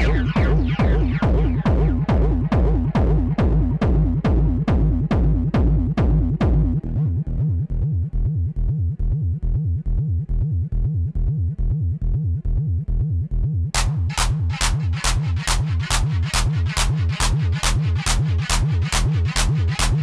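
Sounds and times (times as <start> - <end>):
techno music: 0.0 - 7.9, 13.8 - 20.0.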